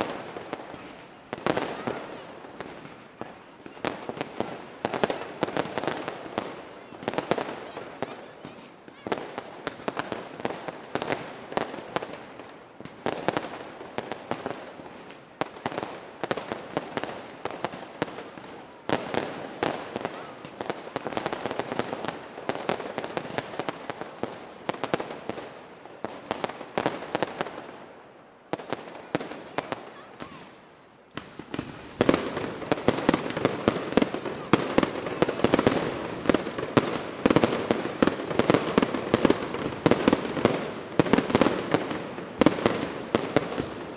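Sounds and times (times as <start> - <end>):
fireworks crackling and banging: 0.0 - 43.9.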